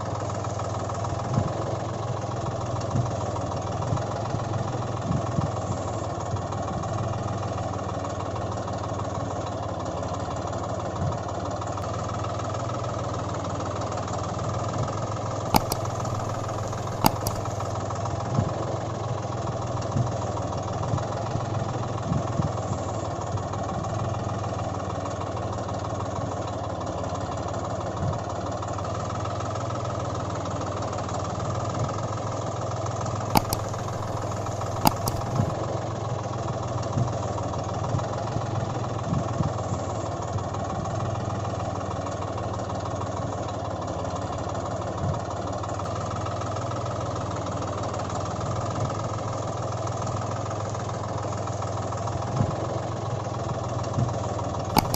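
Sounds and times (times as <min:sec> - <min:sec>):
sharp clicks: 0:15.5 - 0:17.8, 0:33.3 - 0:35.6.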